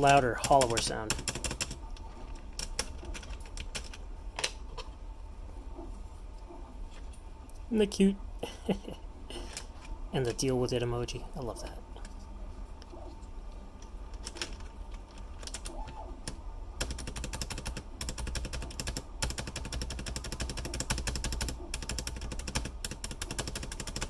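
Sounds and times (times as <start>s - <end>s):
mechanical keyboard typing: 0.0s - 1.8s, 14.1s - 24.0s.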